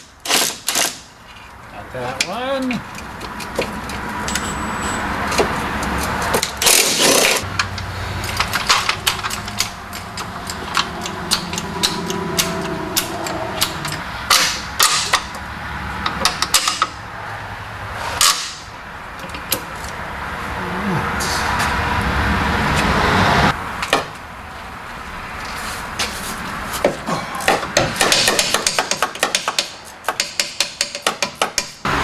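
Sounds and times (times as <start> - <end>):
steady low hum: 7.4 - 15.3.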